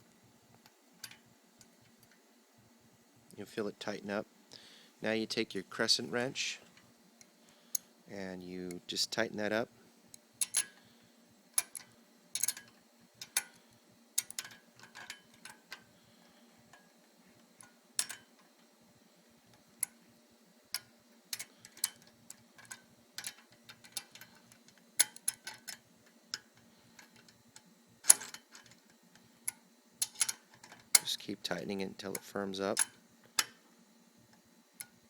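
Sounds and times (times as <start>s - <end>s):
faint steady hum: 0.0s - 35.0s
wrench clicking on metal nut: 10.4s - 10.7s, 18.0s - 18.2s, 30.0s - 30.4s.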